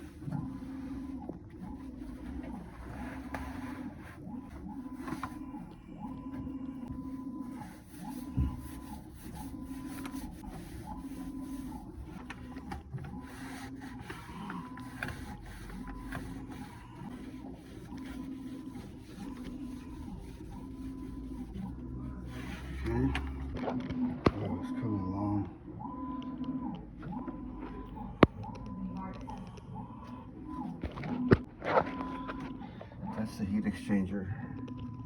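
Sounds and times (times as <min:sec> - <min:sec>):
rhythmic mechanical hum: 0:00.0 - 0:35.0.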